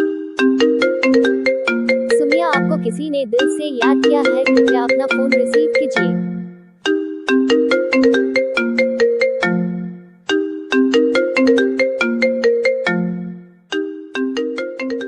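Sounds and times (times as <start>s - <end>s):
bell-like phone ringtone melody: 0.0s - 15.0s.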